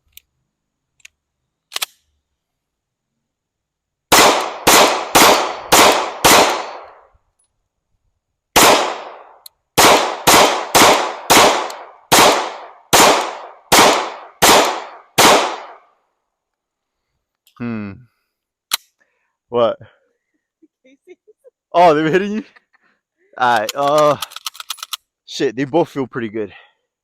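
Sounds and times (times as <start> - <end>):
pistol shots with ringing tail: 4.1 - 7.0, 8.6 - 15.8.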